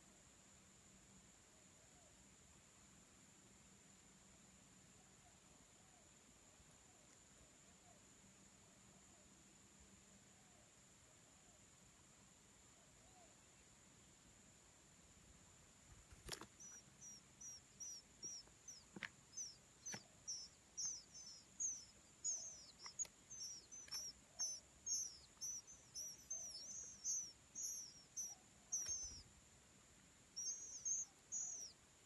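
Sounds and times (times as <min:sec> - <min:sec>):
bird singing whistled notes: 0:16.6 - 0:29.3, 0:30.3 - 0:31.8.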